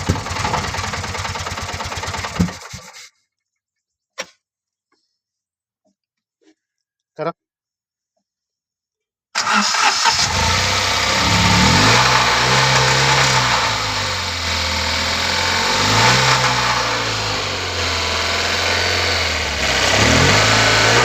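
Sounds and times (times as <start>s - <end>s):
engine popping: 0.0s - 2.9s, 9.4s - 21.0s
car engine revving: 9.4s - 21.0s.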